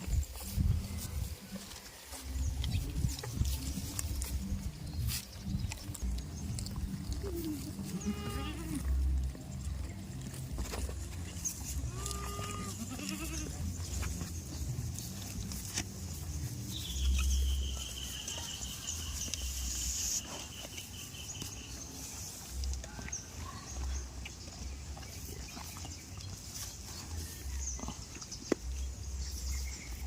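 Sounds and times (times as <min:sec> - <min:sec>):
goats bleating: 0:07.3 - 0:09.0, 0:11.8 - 0:13.7.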